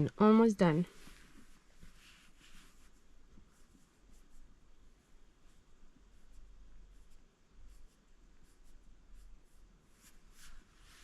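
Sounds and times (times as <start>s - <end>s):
low room hum: 0.0s - 11.0s
faint scratching and handling: 0.3s - 11.0s.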